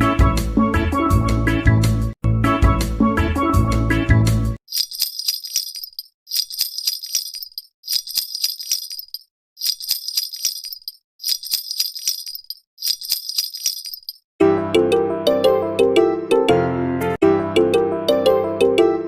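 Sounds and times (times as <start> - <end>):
music: 0.0 - 4.6, 14.4 - 19.0
baby rattle jingling: 4.7 - 14.2.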